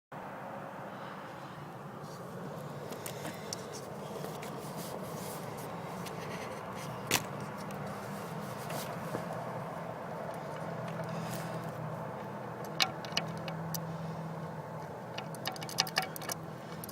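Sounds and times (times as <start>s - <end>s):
diesel engine running: 0.2s - 16.9s
light ticks: 12.2s - 13.9s.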